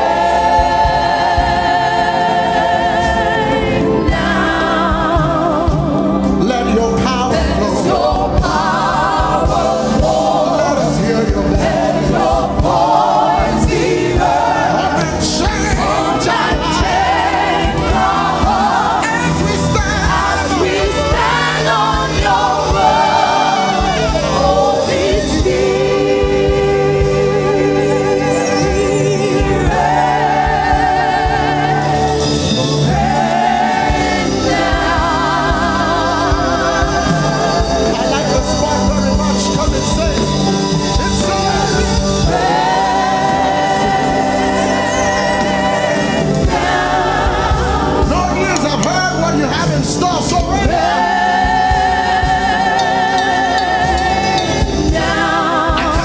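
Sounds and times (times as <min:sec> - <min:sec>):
gospel choir singing: 0:00.0 - 0:56.0
instrumental backing: 0:00.0 - 0:56.0.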